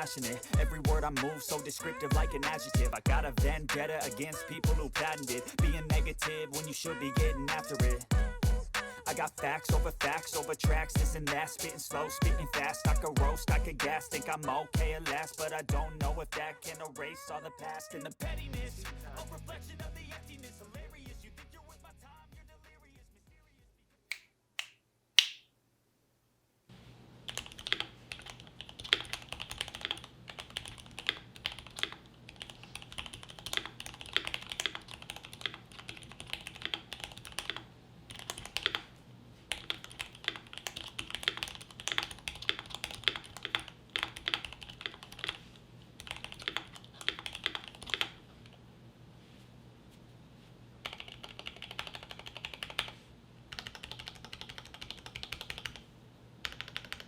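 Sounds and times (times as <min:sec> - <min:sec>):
keyboard typing: 0:00.0 - 0:16.9, 0:27.3 - 0:38.9, 0:39.5 - 0:45.4, 0:46.0 - 0:48.6, 0:50.8 - 0:55.8, 0:56.4 - 0:57.0.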